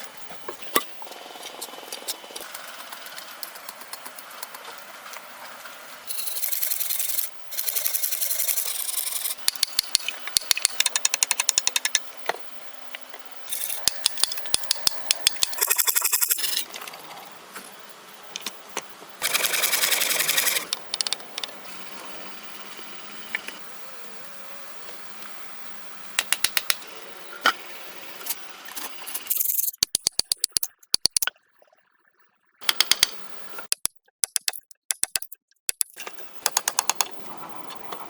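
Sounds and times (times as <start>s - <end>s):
power tool rattling: 19.2s - 20.7s
rapid clicks: 19.2s - 21.5s, 32.6s - 38.0s.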